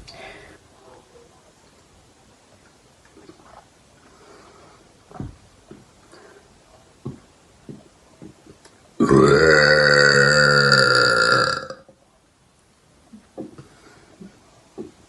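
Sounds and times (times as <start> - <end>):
woman burping: 9.0 - 11.8.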